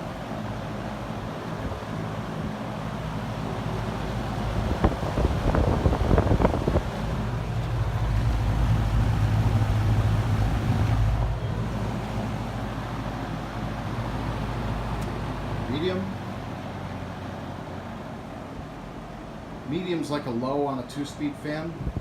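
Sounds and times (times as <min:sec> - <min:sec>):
gusty air buffeting: 0:00.0 - 0:19.4, 0:21.7 - 0:22.0
low motor hum: 0:00.0 - 0:20.0
box fan air rush: 0:00.0 - 0:22.0.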